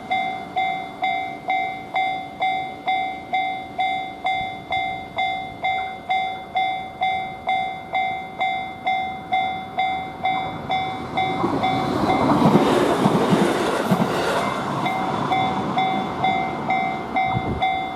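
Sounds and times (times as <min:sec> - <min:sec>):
level crossing warning bell: 0:00.0 - 0:17.9.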